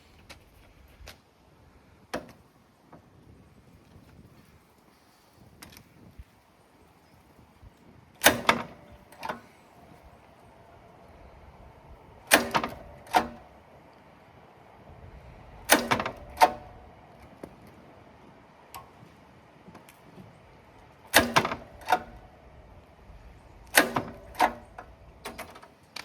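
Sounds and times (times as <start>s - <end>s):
recoil starter pulls rasping: 8.2s - 10.5s, 11.1s - 13.7s, 15.2s - 17.7s, 21.0s - 26.0s.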